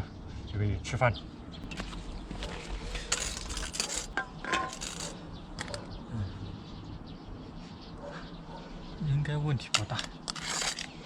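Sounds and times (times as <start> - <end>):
dishes clinking and clattering: 3.1 - 5.8.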